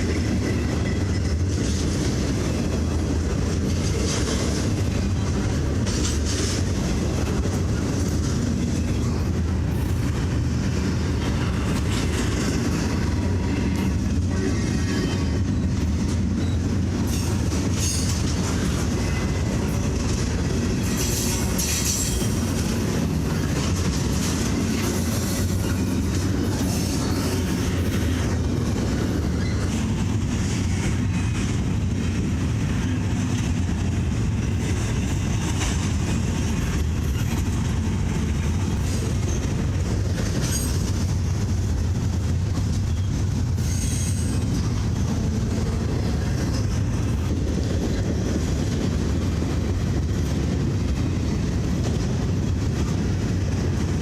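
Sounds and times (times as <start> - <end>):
train cars rumbling past: 0.0 - 54.0
wheels clacking over rail joints: 0.0 - 54.0
high wheel squeals: 42.9 - 44.5.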